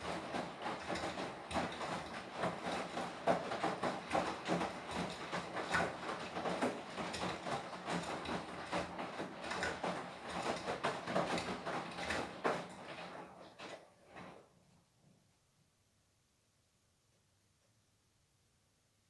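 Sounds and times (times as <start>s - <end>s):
washing machine drum tumbling: 0.0s - 13.7s
knocks and clatter: 0.0s - 14.3s.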